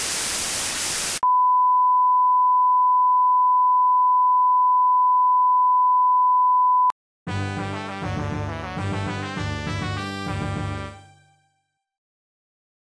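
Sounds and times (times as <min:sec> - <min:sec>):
static hiss: 0:00.0 - 0:01.2
steady pure test tone beep: 0:01.2 - 0:06.9.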